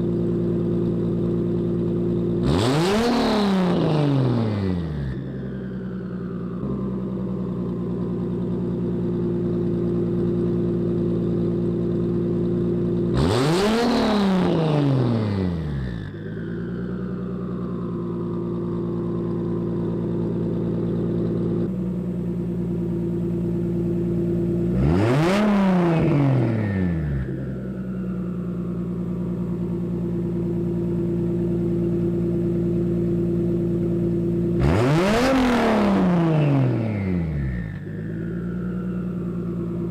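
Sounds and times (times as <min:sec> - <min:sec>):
car engine idling and revving: 0:00.0 - 0:39.9
turbo whine: 0:22.7 - 0:39.9.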